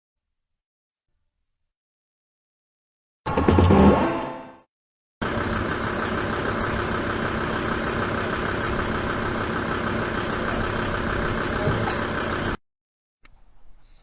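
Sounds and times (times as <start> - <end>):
engine idling: 5.2 - 12.6.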